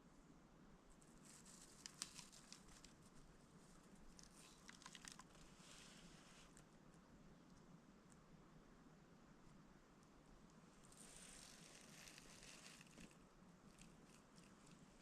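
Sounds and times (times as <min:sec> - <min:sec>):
faint rustling: 0:00.9 - 0:06.7, 0:10.6 - 0:15.0.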